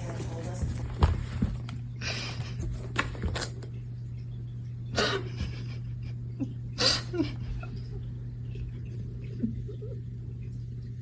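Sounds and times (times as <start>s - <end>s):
scratching and scrabbling: 0.0s - 3.7s
steady low hum: 0.0s - 11.0s.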